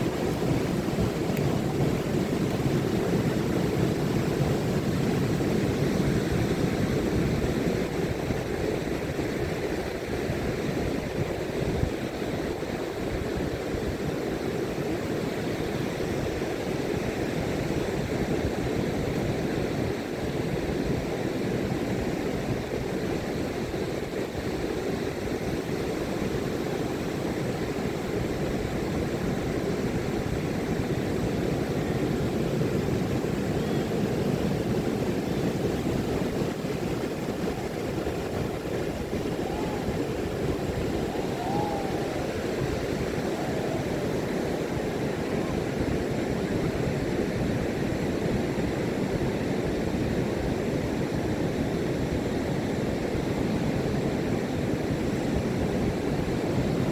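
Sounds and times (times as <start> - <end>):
ocean surf rumbling: 0.0 - 7.3, 33.4 - 48.7.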